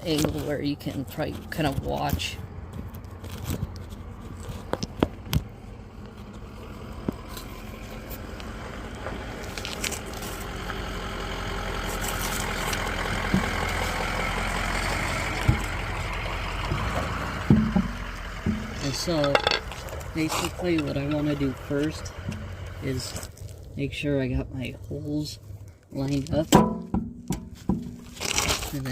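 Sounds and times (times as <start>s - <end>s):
vehicle engine running: 0.0s - 28.9s
sharp clicks and knocks: 16.6s - 21.6s, 26.3s - 28.6s.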